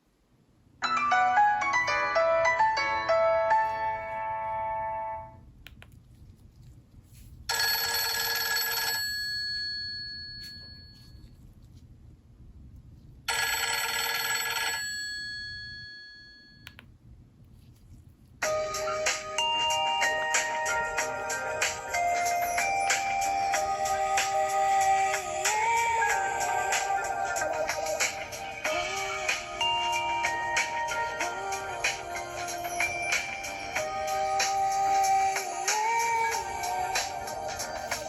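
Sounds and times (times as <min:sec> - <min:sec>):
busy melodic ringtone: 0:00.8 - 0:05.4, 0:07.5 - 0:09.5, 0:18.4 - 0:38.0
melodic ringtone: 0:00.8 - 0:05.4, 0:07.5 - 0:09.3, 0:18.4 - 0:38.0.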